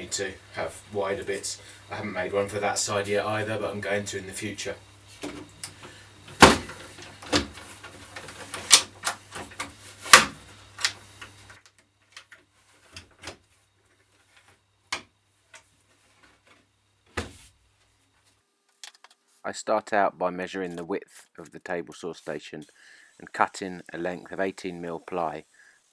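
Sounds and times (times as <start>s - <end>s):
steady low hum: 0.0s - 18.4s.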